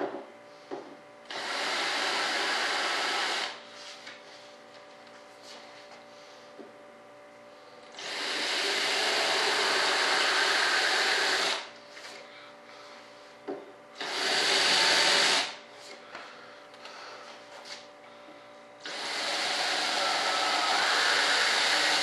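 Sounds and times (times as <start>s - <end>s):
faint steady hum: 0.0s - 22.0s
power tool running: 1.3s - 3.6s, 7.9s - 11.7s, 14.0s - 15.6s, 18.8s - 22.0s.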